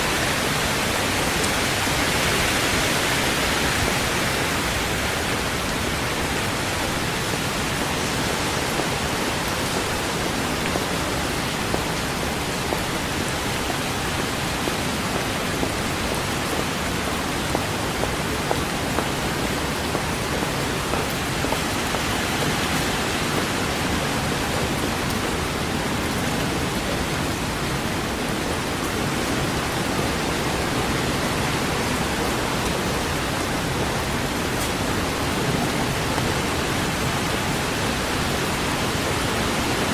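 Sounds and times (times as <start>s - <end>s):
steady rain hiss: 0.0s - 39.9s
raindrop ticks: 8.5s - 25.6s.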